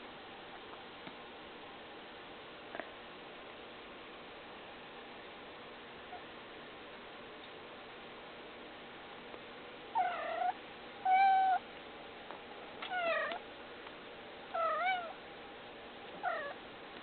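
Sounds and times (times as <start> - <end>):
cat meowing: 10.0 - 11.6, 12.9 - 13.4, 14.6 - 15.2, 16.2 - 16.6.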